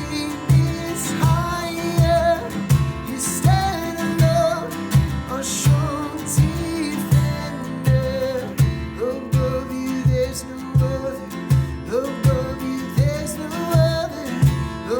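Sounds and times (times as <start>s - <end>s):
person singing worship song: 0.0s - 11.2s
guitar: 0.0s - 14.9s
steady beat: 0.0s - 14.9s.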